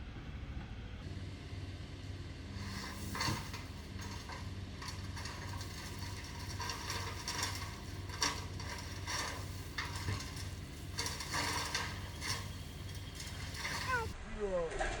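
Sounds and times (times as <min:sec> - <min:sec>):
diesel engine running: 0:01.1 - 0:14.2
stone scraping and rattling: 0:02.6 - 0:14.2.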